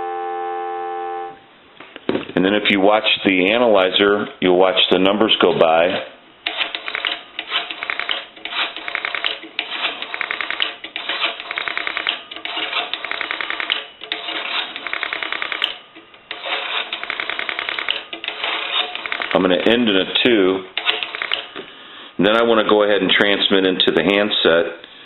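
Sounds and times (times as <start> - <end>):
rotary dial clicking: 6.5 - 19.4, 20.8 - 21.5
rotary dial winding: 6.5 - 19.4, 20.8 - 21.5.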